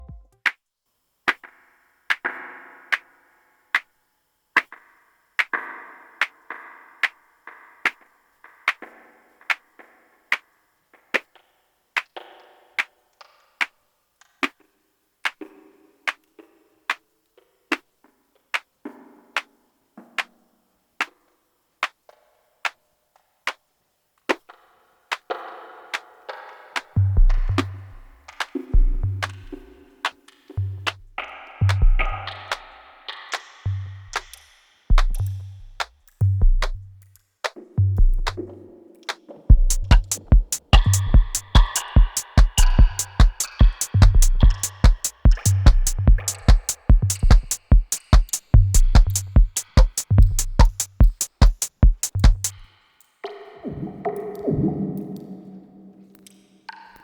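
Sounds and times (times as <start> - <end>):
electronic percussion clicks: 39.0 - 53.4.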